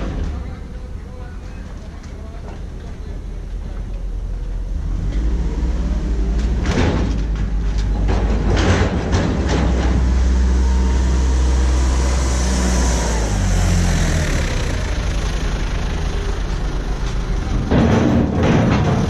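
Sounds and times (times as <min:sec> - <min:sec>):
vehicle engine running: 0:00.0 - 0:19.0
metal clanks and rattles: 0:06.3 - 0:10.5, 0:17.0 - 0:19.0.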